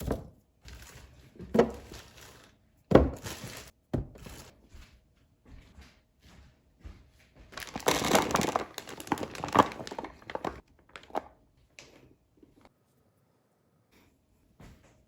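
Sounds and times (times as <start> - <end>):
packaging crinkling: 7.5 - 11.4.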